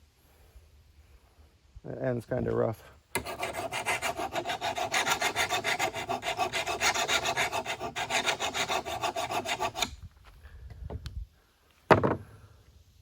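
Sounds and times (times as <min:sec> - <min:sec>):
file scraping steel blade: 0:03.2 - 0:10.0.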